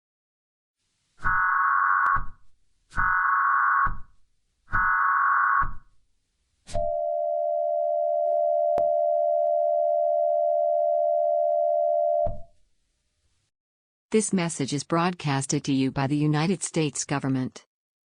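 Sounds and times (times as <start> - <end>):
steady attention tone: 6.7 - 12.5.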